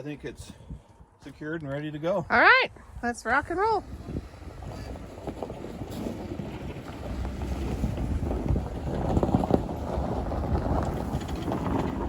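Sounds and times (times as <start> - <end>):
wind buffeting microphone: 0.0 - 12.0
vehicle engine rumble: 2.8 - 12.0.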